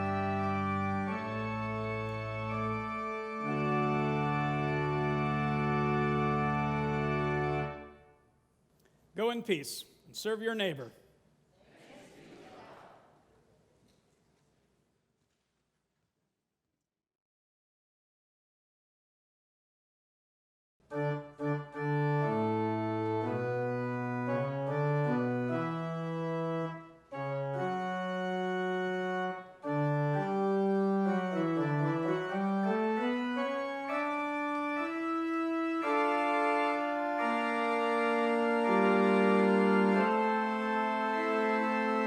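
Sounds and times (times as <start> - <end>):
church organ playing chords: 0.0 - 8.2, 20.9 - 42.0.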